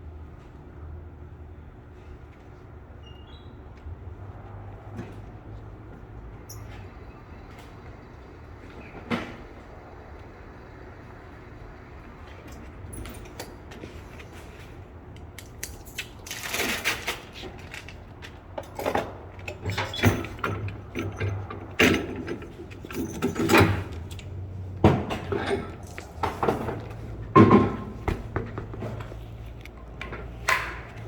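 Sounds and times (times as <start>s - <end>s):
metal tools clanking: 15.7s - 28.0s.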